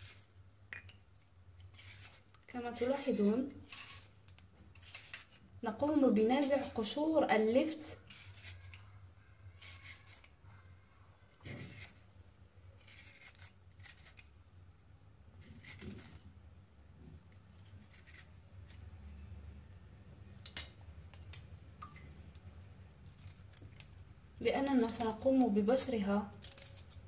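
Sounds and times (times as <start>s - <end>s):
blade scraping turnip skin: 1.6s - 4.2s, 4.8s - 5.4s, 7.7s - 10.4s, 11.5s - 12.1s, 12.8s - 14.3s, 15.4s - 16.3s, 17.4s - 19.2s, 23.1s - 24.0s, 24.7s - 27.0s.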